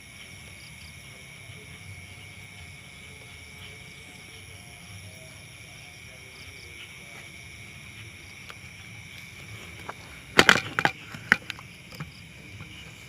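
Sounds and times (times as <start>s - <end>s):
high insect trilling: 0.0s - 13.0s
sharp cracks: 9.9s - 12.0s.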